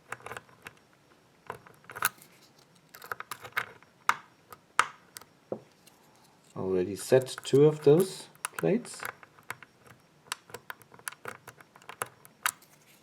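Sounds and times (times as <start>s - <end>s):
lock pick clicking and scraping: 1.5s - 3.8s, 7.0s - 12.9s.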